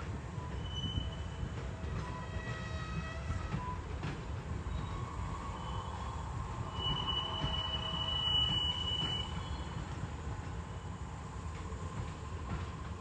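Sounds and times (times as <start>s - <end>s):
train rumbling: 0.0s - 13.0s
wheel squealing on rails: 0.4s - 10.2s.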